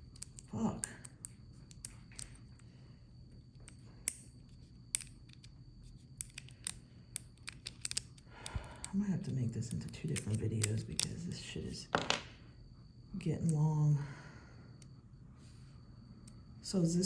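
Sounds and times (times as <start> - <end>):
metal toy parts clicking: 0.0 - 2.4, 3.7 - 4.3, 4.9 - 5.5, 6.2 - 9.0, 9.7 - 11.2.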